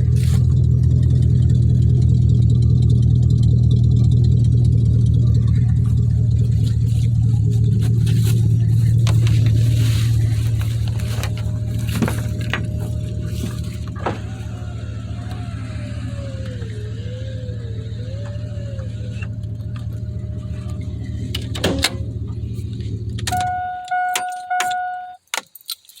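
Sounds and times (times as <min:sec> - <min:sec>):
truck engine idling: 0:00.0 - 0:25.2
clicks: 0:18.0 - 0:25.9
electronic warning chime dinging: 0:23.3 - 0:25.2.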